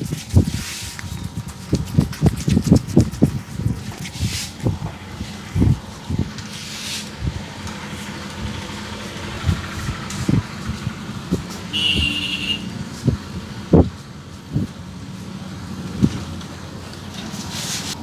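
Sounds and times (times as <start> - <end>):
hands patting a head: 0.0 - 4.8
traffic noise: 0.0 - 18.0.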